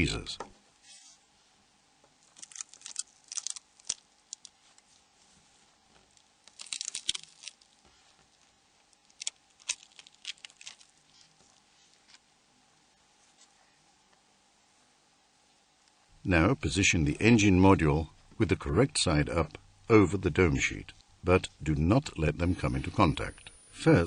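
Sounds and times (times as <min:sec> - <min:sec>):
protective film peeling: 0:02.2 - 0:04.9, 0:06.0 - 0:07.8, 0:08.9 - 0:12.2
soft crackling and tearing: 0:02.2 - 0:12.3.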